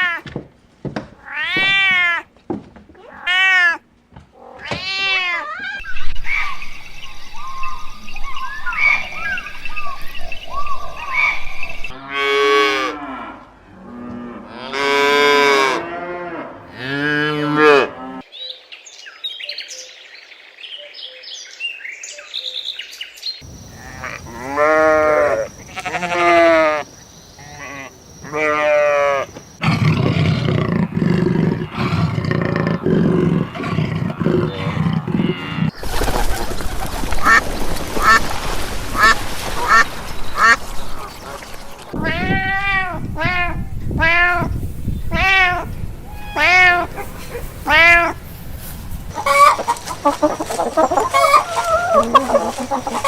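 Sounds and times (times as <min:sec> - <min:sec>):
rough low animal noise: 0:23.4 - 0:53.0
long wavering animal calls: 0:49.1 - 0:53.0.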